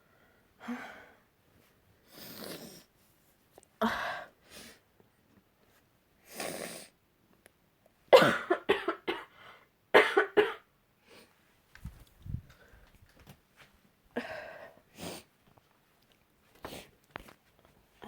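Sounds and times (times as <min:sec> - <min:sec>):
person coughing: 0:08.2 - 0:09.4, 0:10.0 - 0:10.7.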